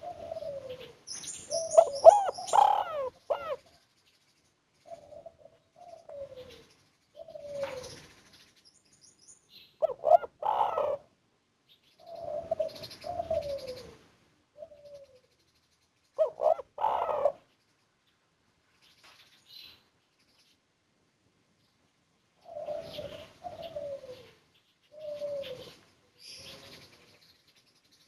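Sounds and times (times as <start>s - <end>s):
dove cooing: 0.0s - 3.8s, 4.8s - 8.1s, 9.8s - 11.1s, 12.0s - 15.3s, 16.2s - 17.5s, 22.4s - 27.2s.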